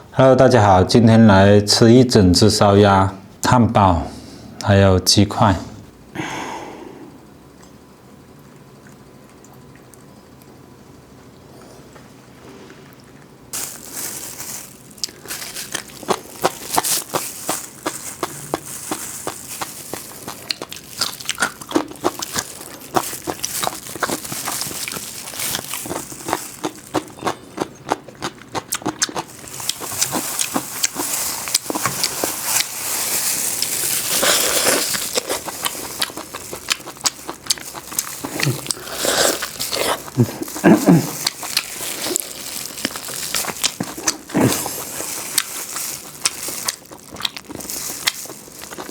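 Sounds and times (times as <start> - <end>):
food crunching while chewed: 7.6 - 10.7, 12.9 - 48.9
rustling: 13.5 - 27.0, 29.3 - 46.8.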